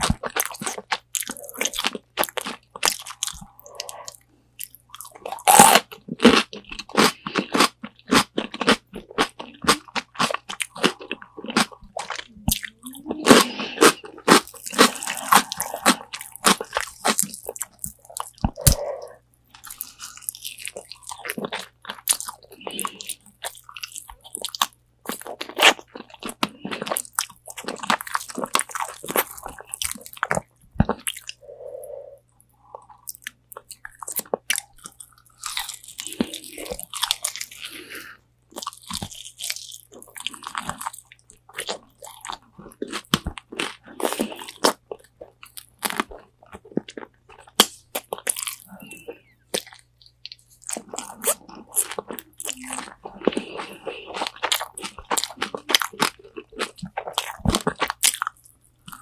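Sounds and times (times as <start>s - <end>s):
crunching fried chicken: 0.0s - 31.4s, 32.7s - 59.0s.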